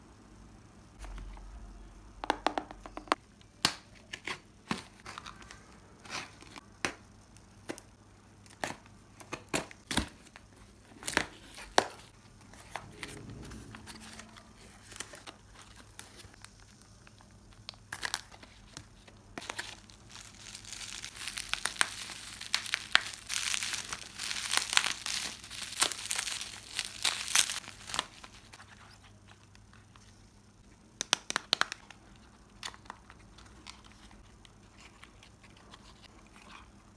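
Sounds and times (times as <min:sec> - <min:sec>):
packaging crinkling and tearing: 0:13.9 - 0:29.6.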